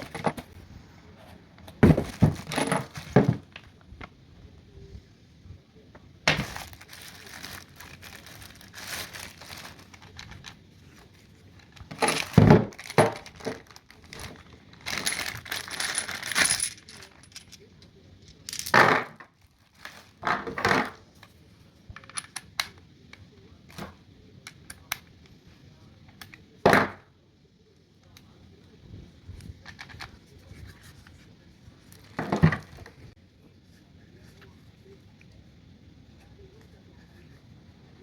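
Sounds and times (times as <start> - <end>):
small metal parts clinking: 11.7 - 18.8.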